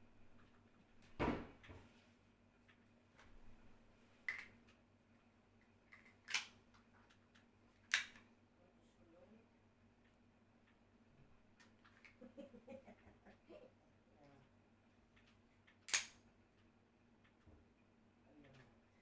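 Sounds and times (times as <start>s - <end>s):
sharp clicks: 15.2s - 16.2s.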